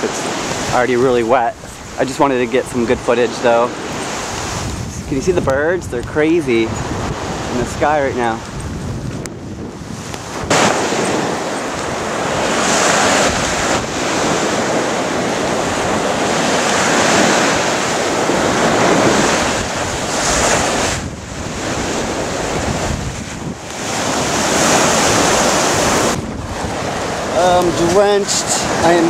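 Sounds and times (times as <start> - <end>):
surf breaking on beach: 0.0 - 29.0
wind buffeting microphone: 0.0 - 29.0.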